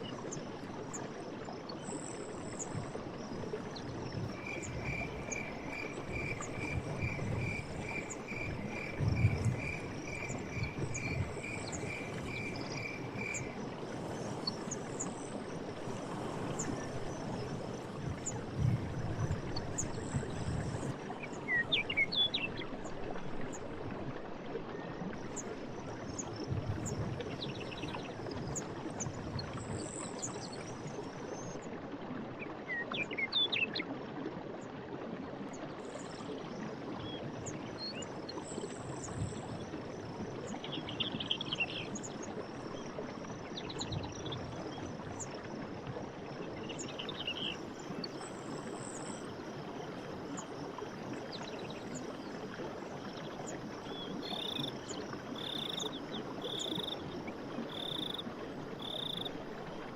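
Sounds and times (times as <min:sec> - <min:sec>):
crickets chirping: 0:00.4 - 0:22.0, 0:38.7 - 0:59.9.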